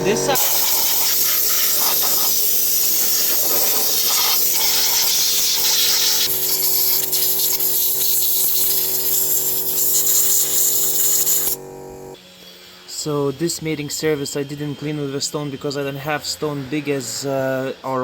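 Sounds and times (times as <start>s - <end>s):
small power tool running: 0.0s - 12.2s.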